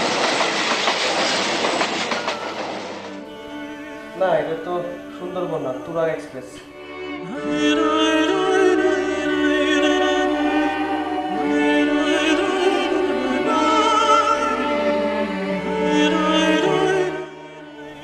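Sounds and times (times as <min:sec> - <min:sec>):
instrumental accompaniment: 0:00.0 - 0:18.0
person singing with vibrato: 0:04.9 - 0:18.0.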